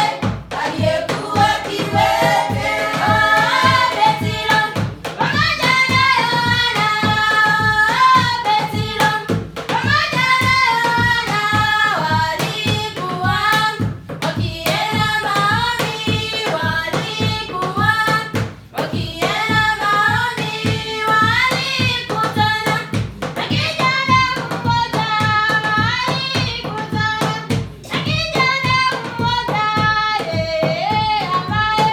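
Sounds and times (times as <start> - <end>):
voices singing a melody: 0.0 - 13.6
quick percussion beat: 0.0 - 31.9.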